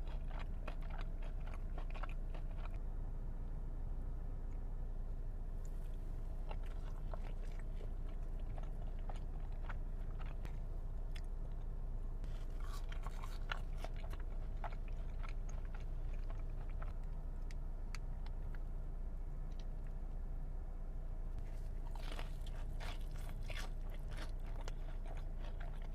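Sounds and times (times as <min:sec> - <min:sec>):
chewing crispy fries: 0:00.0 - 0:02.8, 0:05.6 - 0:18.7, 0:21.4 - 0:25.9
steady low hum: 0:00.0 - 0:25.9.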